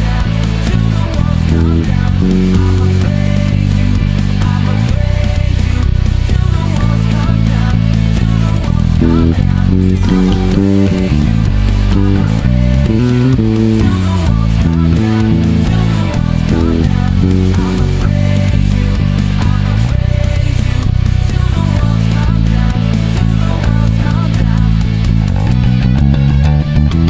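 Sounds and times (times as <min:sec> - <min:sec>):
electric bass guitar: 0:00.0 - 0:27.0
full band track: 0:00.0 - 0:27.0.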